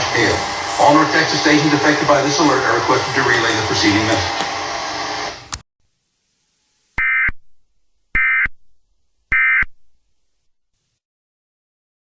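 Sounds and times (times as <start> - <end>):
buzzy warbling data tone bursts: 7.0 - 8.5.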